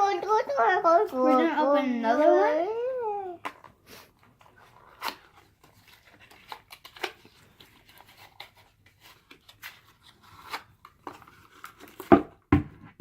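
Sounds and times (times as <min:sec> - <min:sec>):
wrapper crinkling and tearing: 0:04.4 - 0:12.1.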